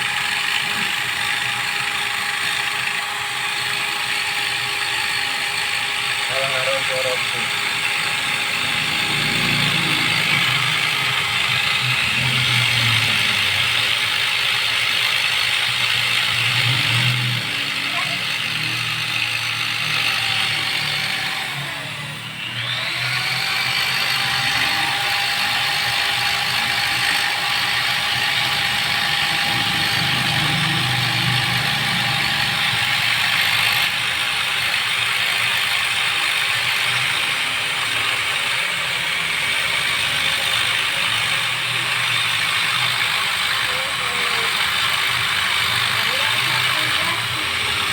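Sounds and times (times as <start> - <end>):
die grinder whining: 0.0 - 47.9.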